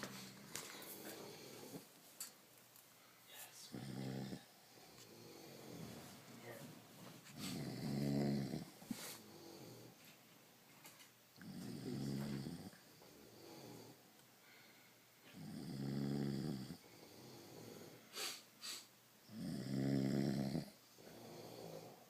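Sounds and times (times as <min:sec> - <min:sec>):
softer snores: 0:03.5 - 0:06.6, 0:07.3 - 0:10.0, 0:11.4 - 0:14.0, 0:15.2 - 0:22.0
loud pitched snores: 0:03.7 - 0:04.5, 0:07.4 - 0:09.9, 0:11.4 - 0:14.0, 0:15.3 - 0:18.3, 0:19.3 - 0:22.0
sharp snorts: 0:17.7 - 0:18.9.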